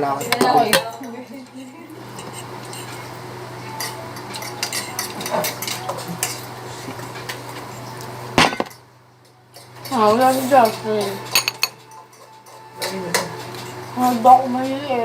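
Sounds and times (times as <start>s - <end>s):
cutlery clinking against plates: 0.0s - 14.8s
steady low hum: 1.4s - 9.8s.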